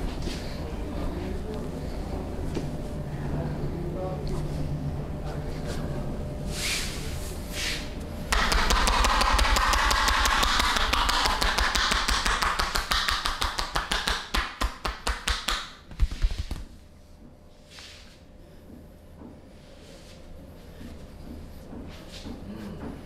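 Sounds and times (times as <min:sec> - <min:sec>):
percussive massage tapping: 0:08.3 - 0:16.6.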